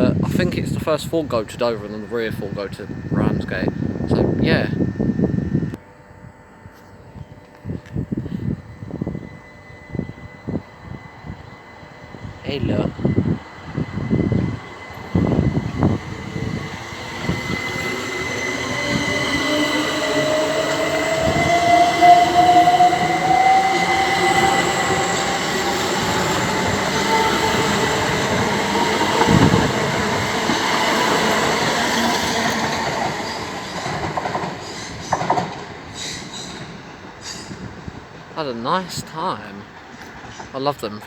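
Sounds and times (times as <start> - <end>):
train traction motor whine rising: 0.0 - 38.2
wheels rumbling on rail: 7.2 - 38.4, 39.6 - 40.6.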